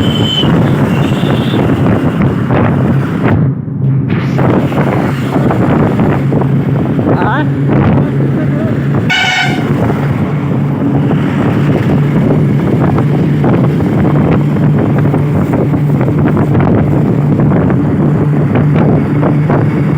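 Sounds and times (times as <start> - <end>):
vehicle engine drone: 0.0 - 19.9
wind buffeting microphone: 0.0 - 19.9.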